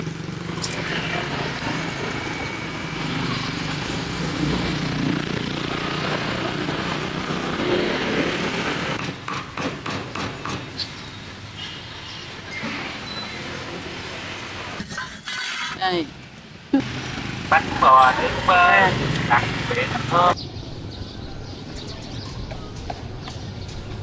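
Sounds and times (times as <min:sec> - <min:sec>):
motorbike engines passing: 0:00.0 - 0:09.0, 0:16.2 - 0:21.5
traffic noise with low hum: 0:00.0 - 0:24.0.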